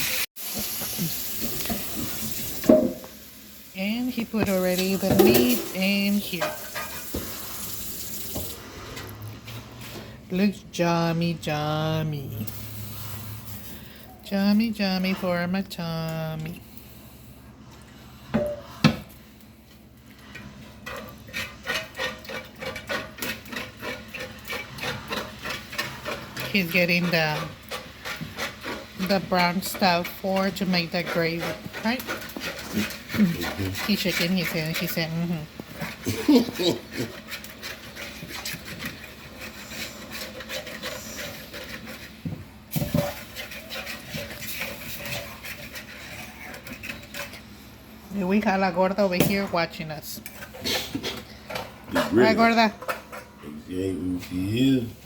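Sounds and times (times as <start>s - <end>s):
utensil scraping pot bottom: 20.2s - 47.5s, 48.1s - 53.4s.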